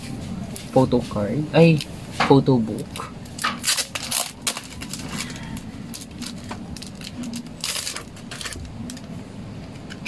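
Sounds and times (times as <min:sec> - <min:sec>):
packaging crinkling: 0:03.3 - 0:09.2.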